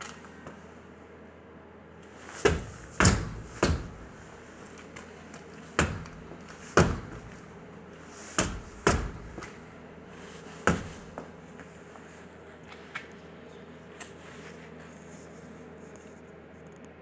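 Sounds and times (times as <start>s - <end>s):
wheel knocking clunks: 2.3s - 9.7s, 10.6s - 11.3s.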